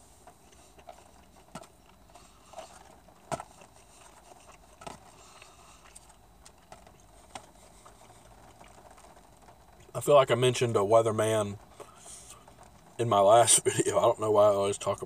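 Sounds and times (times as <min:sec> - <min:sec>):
chewing food: 0:00.0 - 0:09.9.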